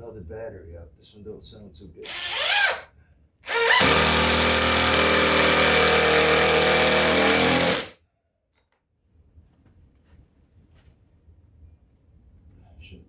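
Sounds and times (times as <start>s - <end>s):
cordless drill running: 2.0s - 2.9s, 3.5s - 8.0s.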